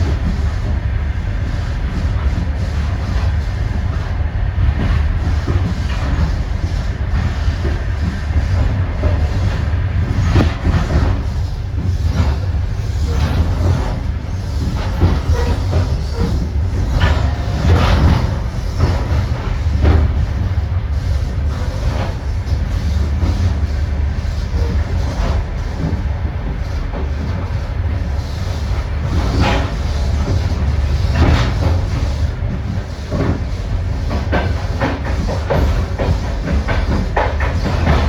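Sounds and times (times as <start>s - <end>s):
train coach rumbling: 0.0s - 38.0s
wheels and couplings clacking: 0.0s - 38.0s.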